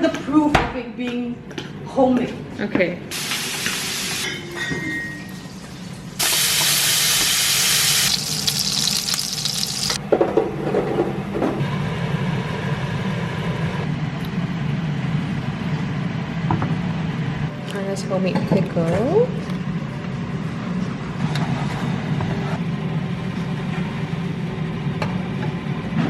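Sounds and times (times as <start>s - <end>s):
loud even hiss: 3.1s - 4.2s, 6.2s - 10.0s.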